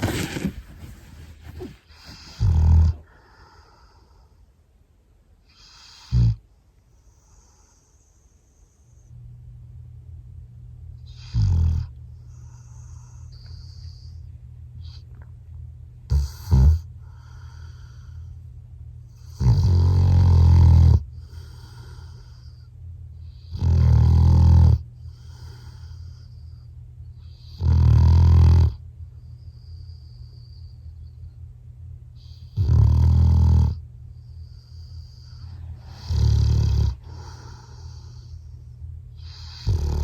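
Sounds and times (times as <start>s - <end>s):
dog snorting: 0.0s - 3.2s, 16.1s - 16.9s, 35.2s - 38.3s, 39.2s - 40.0s
dog snoring: 1.4s - 3.9s, 5.4s - 6.4s, 11.0s - 14.2s, 16.1s - 18.2s, 19.1s - 26.5s, 27.2s - 28.8s, 32.2s - 38.5s, 39.1s - 40.0s.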